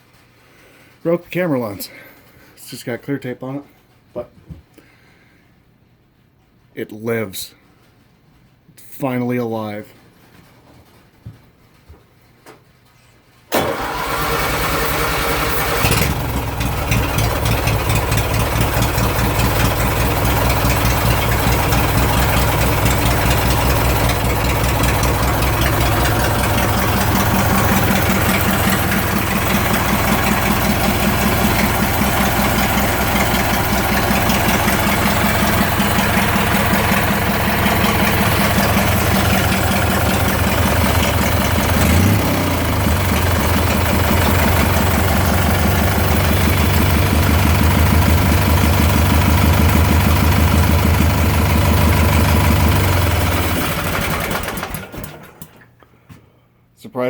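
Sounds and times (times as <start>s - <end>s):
lawn mower engine running: 13.5s - 55.7s.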